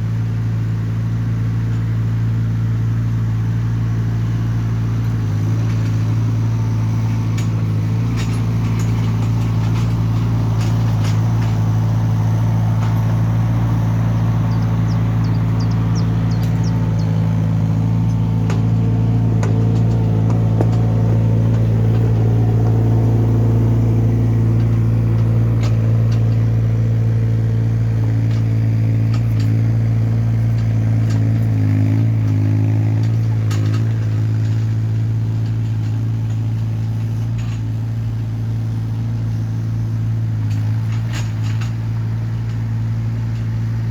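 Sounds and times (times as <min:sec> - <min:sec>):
excavator diesel engine running: 0:00.0 - 0:43.9
clicks and light knocks: 0:07.3 - 0:17.4, 0:18.0 - 0:22.8.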